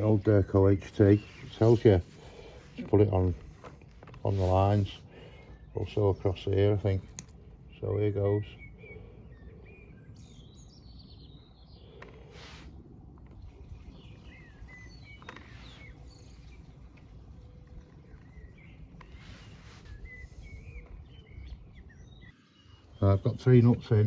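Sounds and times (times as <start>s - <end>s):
faint clicks and rustles: 0.0s - 7.8s, 11.8s - 21.9s
birds chirping and singing: 0.0s - 12.7s, 13.4s - 24.0s.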